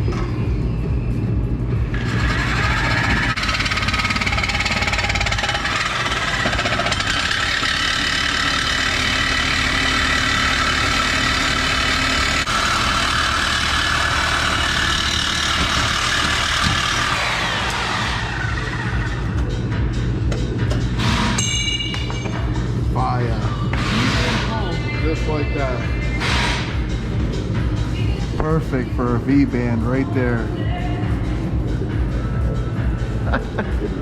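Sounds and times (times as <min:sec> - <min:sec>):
angle grinder cutting metal pipe: 0:01.9 - 0:18.9.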